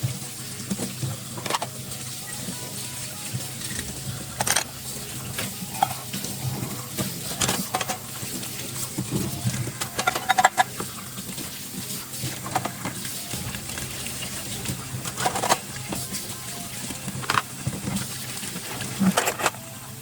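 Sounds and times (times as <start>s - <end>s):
dishes and cutlery clinking: 3.6s - 19.6s
steady low hum: 12.2s - 18.9s.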